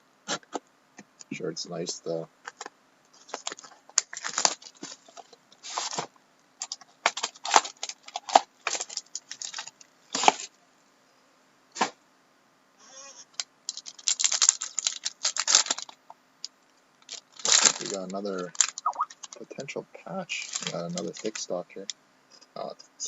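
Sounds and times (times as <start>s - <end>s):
card packs clicking and rustling: 2.4s - 10.5s, 13.7s - 16.0s, 17.0s - 19.4s, 20.4s - 21.6s.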